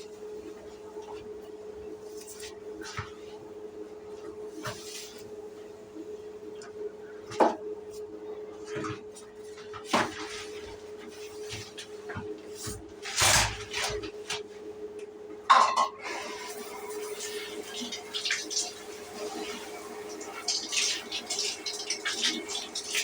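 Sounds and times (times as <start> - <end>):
shower water splashing: 16.1 - 23.0.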